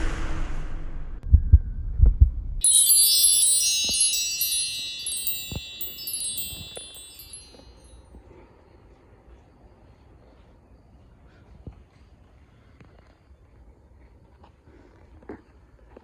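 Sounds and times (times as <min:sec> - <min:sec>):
high bell-like chime tones: 0:02.6 - 0:08.0.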